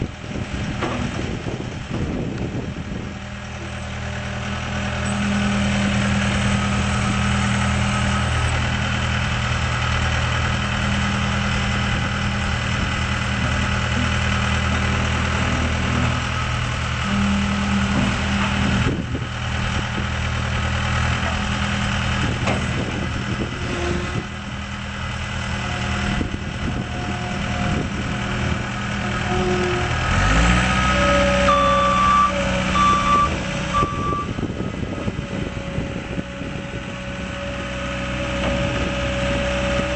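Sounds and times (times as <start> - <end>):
diesel engine running: 0.0 - 39.9
backup alarm beeping: 31.5 - 34.4.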